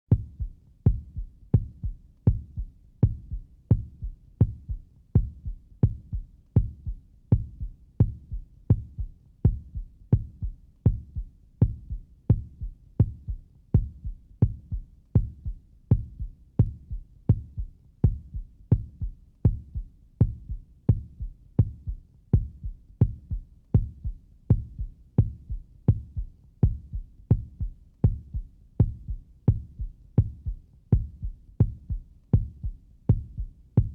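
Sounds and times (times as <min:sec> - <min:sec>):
heartbeat thumps: 0:00.1 - 0:33.9.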